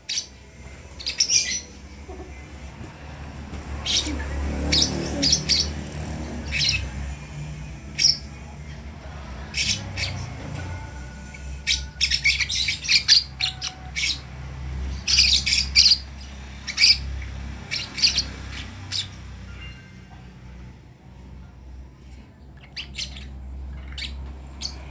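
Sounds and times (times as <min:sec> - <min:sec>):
bird chicks chirping: 0:03.4 - 0:08.4, 0:09.1 - 0:19.8.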